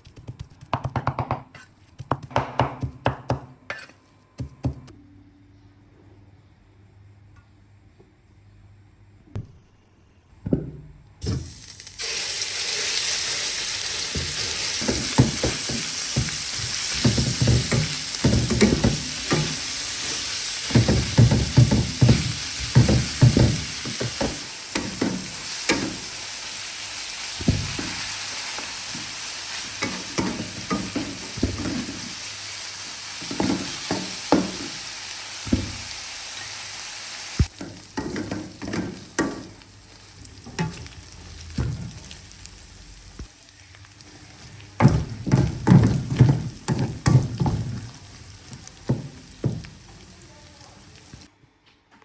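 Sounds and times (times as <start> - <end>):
spatula scraping pan: 3.7 - 4.0
food sizzling in hot oil: 11.2 - 51.3.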